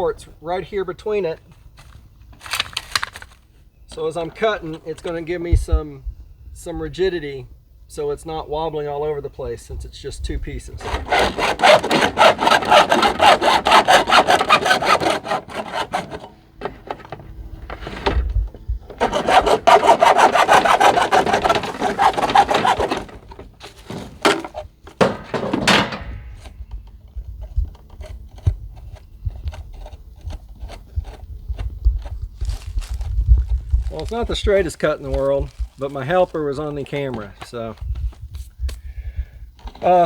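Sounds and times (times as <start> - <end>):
hand saw cutting metal gutter: 10.8 - 18.2, 18.9 - 26.6
knocks: 19.0 - 26.3.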